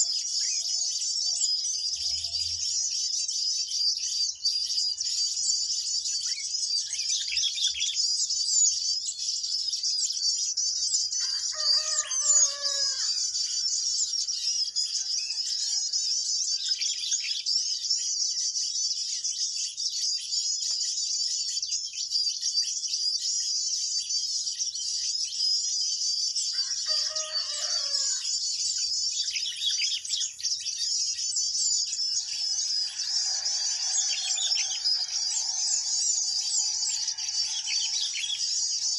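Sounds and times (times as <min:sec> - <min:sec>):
small birds twittering: 0:00.0 - 0:38.9
rooster crowing: 0:11.2 - 0:13.9, 0:26.5 - 0:28.4, 0:32.1 - 0:38.9.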